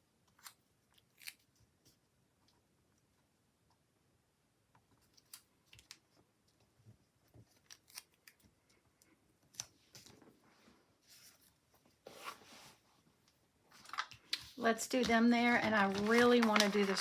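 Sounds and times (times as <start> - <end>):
paper handling clicks and scrapes: 13.8 - 17.0.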